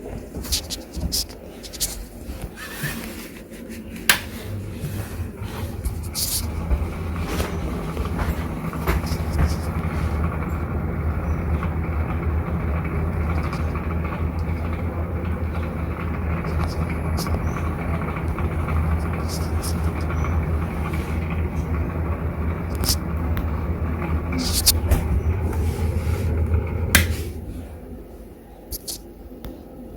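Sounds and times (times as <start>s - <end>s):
fan motor humming: 0.0s - 29.9s
exhaust fan switch click: 26.9s - 27.2s.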